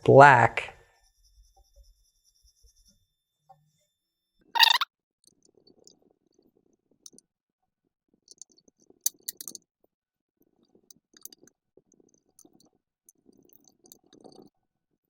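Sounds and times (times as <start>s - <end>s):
small metal parts clinking: 4.6s - 4.8s, 9.1s - 9.6s.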